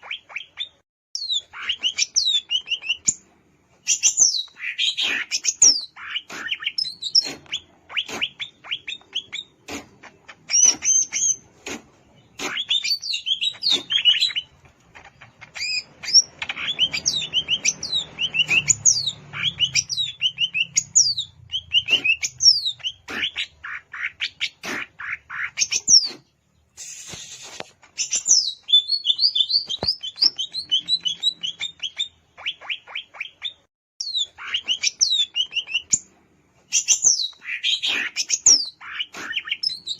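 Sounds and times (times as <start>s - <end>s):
bird singing chirps and whistles: 12.4s - 14.5s, 15.5s - 23.0s, 28.0s - 36.1s, 36.7s - 39.9s.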